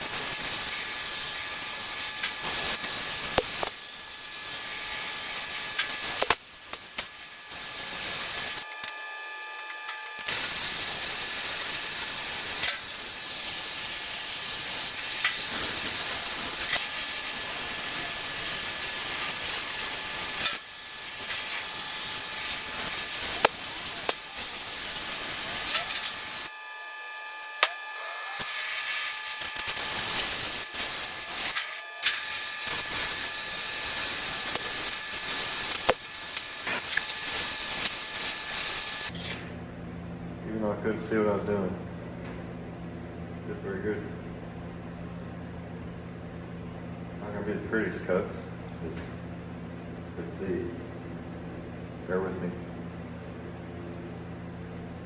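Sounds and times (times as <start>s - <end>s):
crackles and pops: 0.0s - 8.7s, 9.6s - 26.5s, 28.4s - 39.2s
cutting torch hissing: 0.0s - 8.8s, 10.1s - 39.4s.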